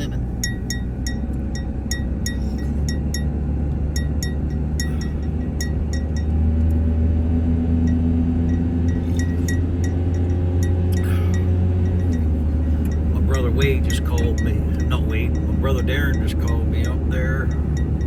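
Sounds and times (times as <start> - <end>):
engine and road drone in cabin: 0.0 - 18.0
light metallic ticks: 7.8 - 18.0.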